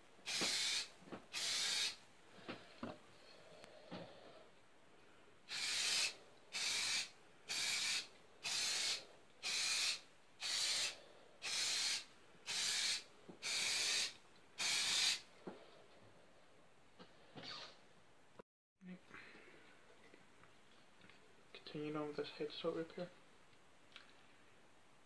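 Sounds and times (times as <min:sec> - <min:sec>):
hissing spray bursts: 0:00.2 - 0:02.0, 0:05.5 - 0:15.2.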